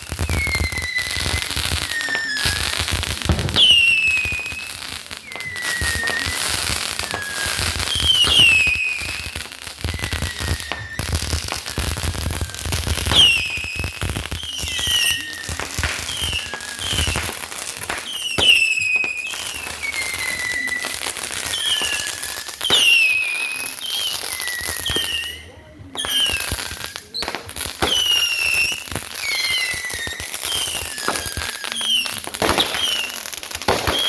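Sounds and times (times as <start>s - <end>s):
firework whistle falling in pitch: 0.0s - 9.3s
fireworks crackling: 0.0s - 34.0s.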